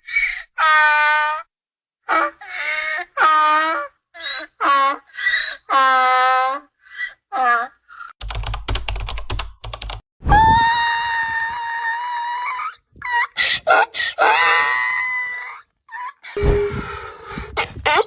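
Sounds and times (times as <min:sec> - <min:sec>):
donkey screaming calls: 0:10.5 - 0:16.4.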